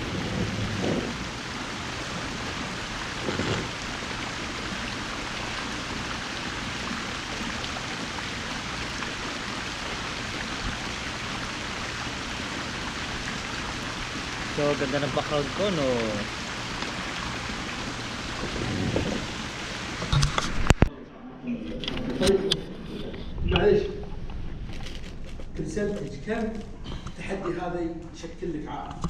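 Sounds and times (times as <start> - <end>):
steady rushing noise: 0.0 - 3.8.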